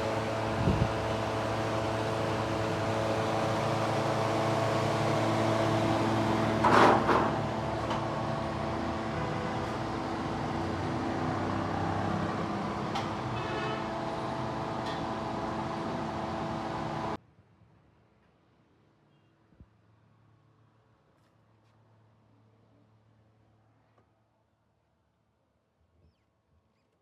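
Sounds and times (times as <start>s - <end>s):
machine humming: 0.0s - 17.2s.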